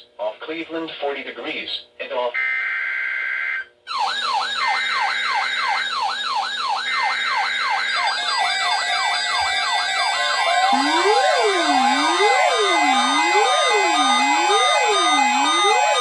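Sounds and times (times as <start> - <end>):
wailing siren tone: 7.4 - 16.0
steady beeping tones: 9.8 - 16.0.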